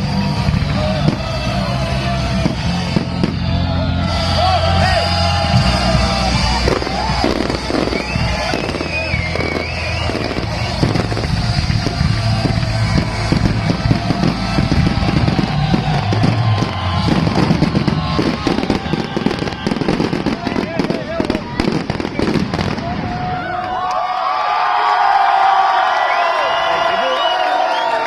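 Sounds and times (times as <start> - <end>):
music with heavy bass: 0.0 - 20.4
fireworks bursting and crackling: 0.0 - 23.8.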